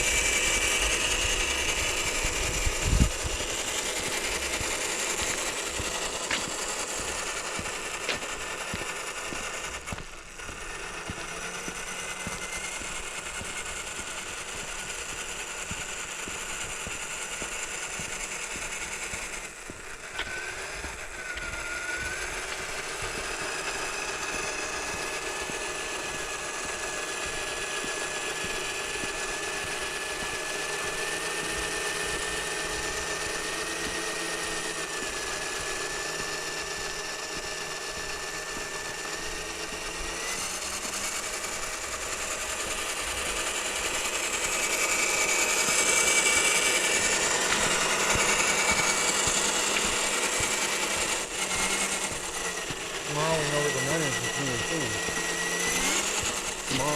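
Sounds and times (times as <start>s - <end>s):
rc truck motor whining: 0.0s - 56.9s.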